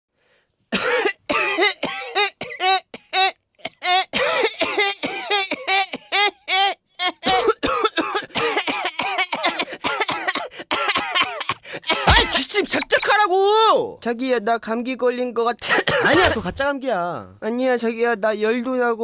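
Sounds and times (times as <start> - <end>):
person coughing: 0.7 - 6.3, 7.2 - 13.1, 15.6 - 16.6.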